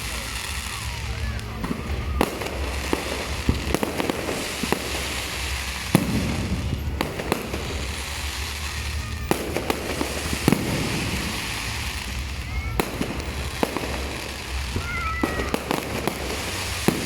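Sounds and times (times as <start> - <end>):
background rumble: 0.0 - 17.0
fireworks bangs and pops: 0.0 - 17.0.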